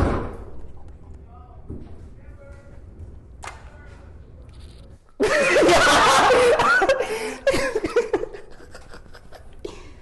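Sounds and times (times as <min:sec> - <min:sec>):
young men laughing loudly: 0:05.2 - 0:09.8.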